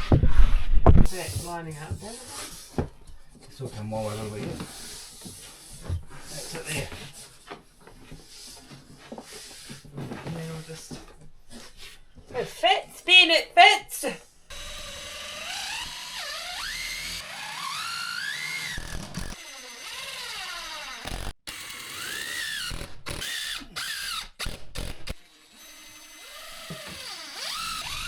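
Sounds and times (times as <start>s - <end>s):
cordless drill motor whirring: 14.5s - 28.0s.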